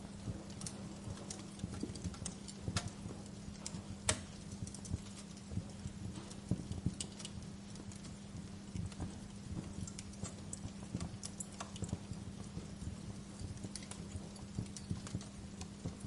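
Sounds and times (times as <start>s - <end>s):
steady low hum: 0.0s - 16.0s
wood fire crackling: 0.0s - 16.0s.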